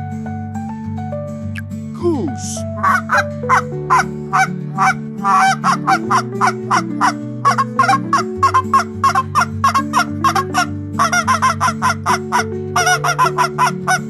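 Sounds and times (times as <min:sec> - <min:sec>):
soft background music: 0:00.0 - 0:14.0
goose honking: 0:02.8 - 0:14.0.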